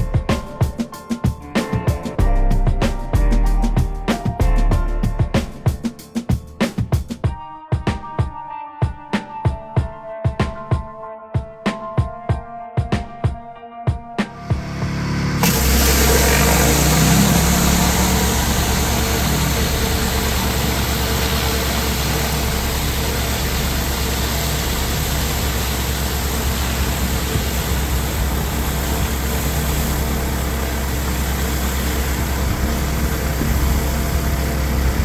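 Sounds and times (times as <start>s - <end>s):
gas engine running: 14.4s - 35.0s.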